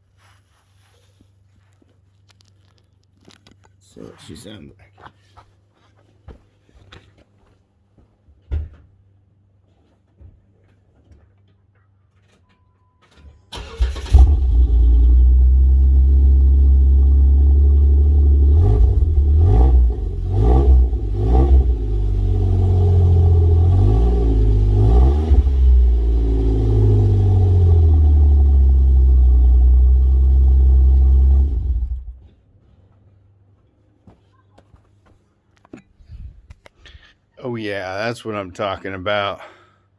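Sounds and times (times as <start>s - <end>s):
engine cranking and revving: 13.5s - 32.2s.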